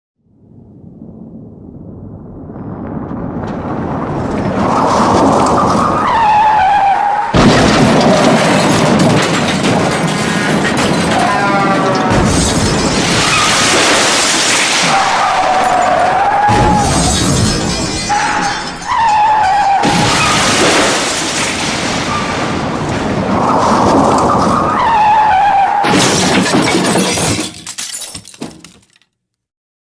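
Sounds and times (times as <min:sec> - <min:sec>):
crashing debris: 0:02.8 - 0:29.0
loud crash impact: 0:07.3 - 0:11.4, 0:12.0 - 0:24.8.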